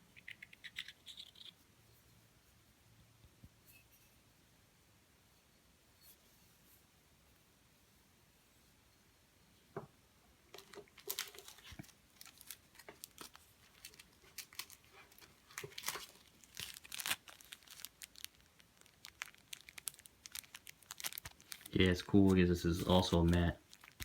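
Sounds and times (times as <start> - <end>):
plastic packaging clicks: 10.5 - 21.8, 22.8 - 24.0
plastic packaging crinkling: 10.5 - 24.0.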